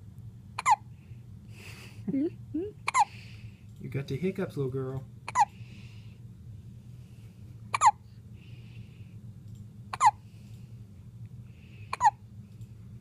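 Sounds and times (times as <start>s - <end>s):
person hiccuping: 0.6s - 0.8s, 2.6s - 3.1s, 5.3s - 5.5s, 7.7s - 8.0s.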